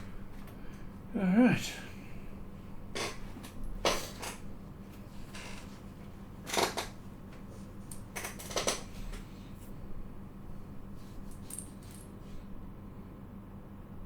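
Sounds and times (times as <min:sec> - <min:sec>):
tools clattering on workbench: 0:03.0 - 0:04.4, 0:07.9 - 0:09.2.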